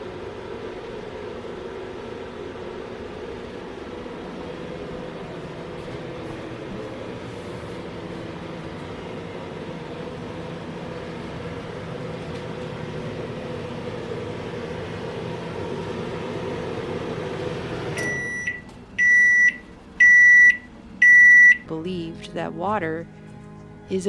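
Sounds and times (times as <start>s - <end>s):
microwave oven humming: 0.0s - 24.0s
microwave beeping: 5.6s - 22.1s.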